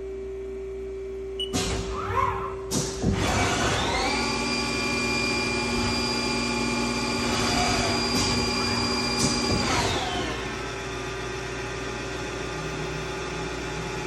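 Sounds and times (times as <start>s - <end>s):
lathe spindle electric whine: 3.2s - 14.0s.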